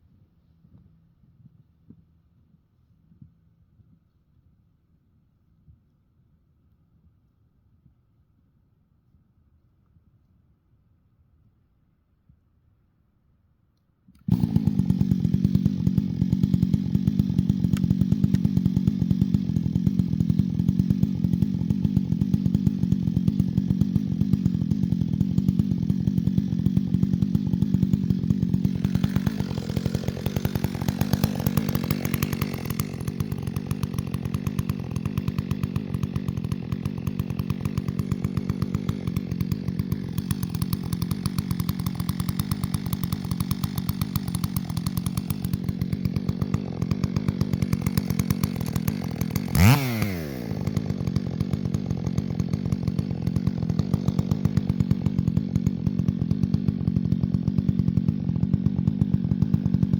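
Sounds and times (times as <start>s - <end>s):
chainsaw engine running: 14.2s - 59.9s.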